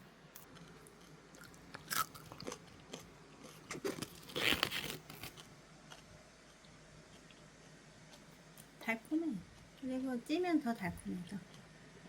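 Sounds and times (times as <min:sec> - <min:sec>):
cabbage leaf crunching: 0:03.8 - 0:05.4.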